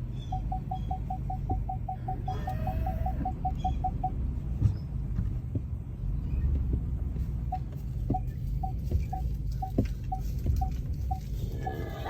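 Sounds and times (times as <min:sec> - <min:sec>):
low steady rumble: 0:00.0 - 0:12.0
short electronic beeps: 0:00.2 - 0:04.2, 0:07.4 - 0:11.3.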